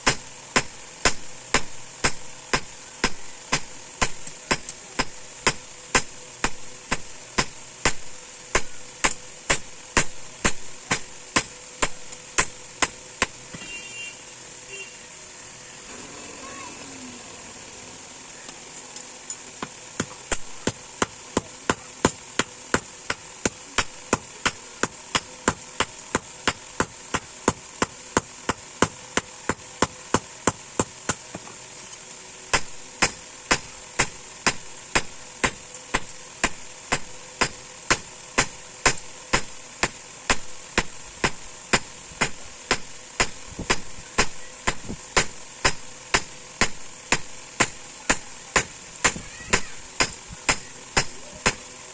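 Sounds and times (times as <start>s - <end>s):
steady high hiss: 0.0s - 51.9s
hammer blows on steel: 32.5s - 51.6s.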